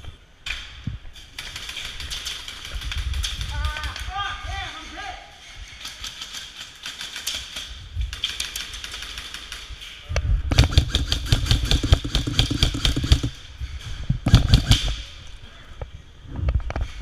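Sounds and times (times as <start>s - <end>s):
airsoft gun full-auto bursts: 10.5s - 13.4s, 14.3s - 14.9s.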